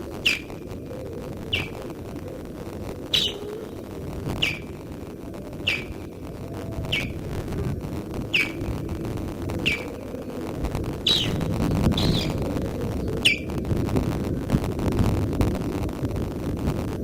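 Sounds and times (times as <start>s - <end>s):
osprey alarm calls: 0.0s - 13.7s.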